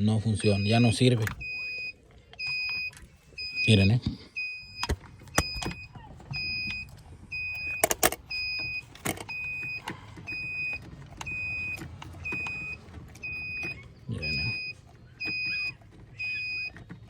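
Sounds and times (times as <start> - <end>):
electronic warning chime beeping: 0.2 - 16.7
sharp clicks and knocks: 4.8 - 13.9.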